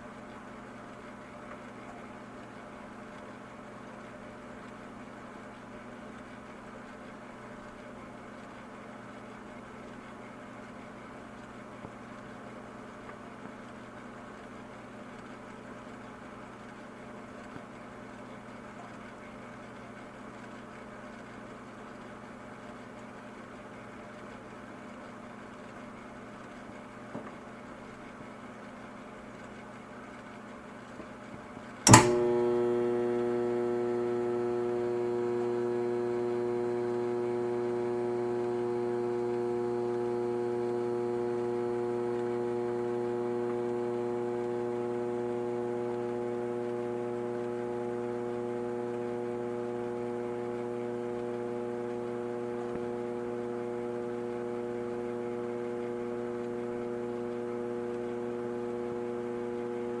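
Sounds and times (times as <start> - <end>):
dishwasher motor hum: 31.7 - 60.0
dishwasher switch click: 31.9 - 32.3.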